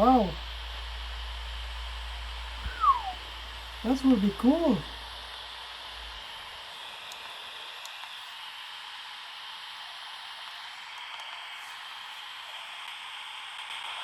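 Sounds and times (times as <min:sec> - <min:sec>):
low hum: 0:00.0 - 0:06.4.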